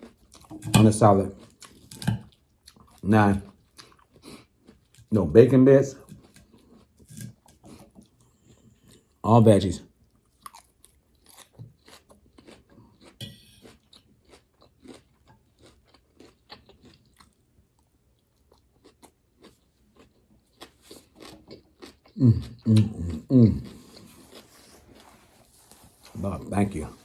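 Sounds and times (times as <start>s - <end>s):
crunching and chewing salad: 0.0s - 27.0s
person's voice: 0.7s - 1.4s, 3.0s - 3.4s, 5.1s - 6.0s, 9.3s - 9.8s, 22.2s - 23.7s, 26.1s - 27.0s.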